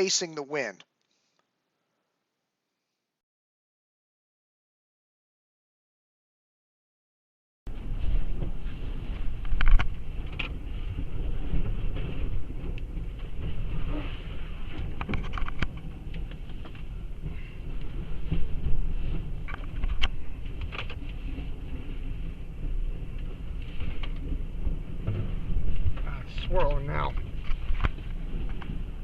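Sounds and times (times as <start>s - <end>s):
rain and debris striking: 7.7s - 29.0s
roaring hurricane wind: 7.7s - 29.0s.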